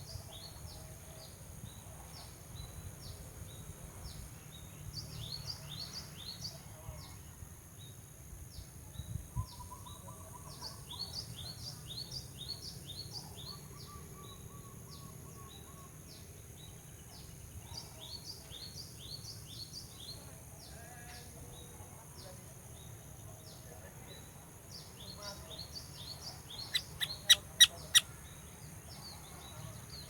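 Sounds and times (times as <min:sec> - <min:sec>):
bird chirping and calling: 0:25.8 - 0:28.1.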